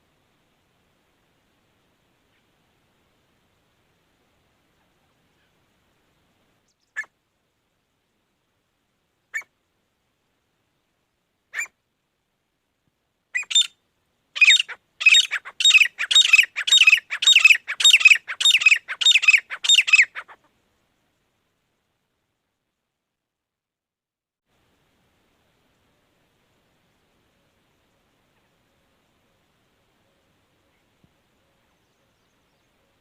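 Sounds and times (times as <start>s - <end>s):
grey francolin calling: 9.3s - 9.5s, 11.5s - 11.8s, 13.4s - 13.8s, 14.4s - 20.4s.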